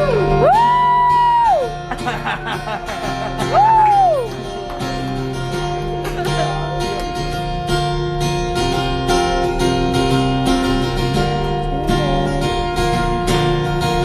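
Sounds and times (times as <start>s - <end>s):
acoustic guitar strumming: 0.0s - 14.0s
person singing: 1.9s - 7.3s, 9.1s - 13.2s.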